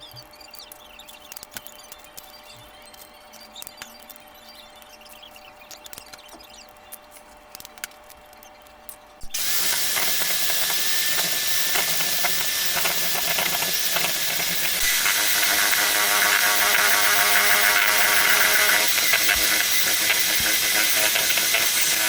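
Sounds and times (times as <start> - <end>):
electric kitchen mixer whirring: 9.3 - 22.0.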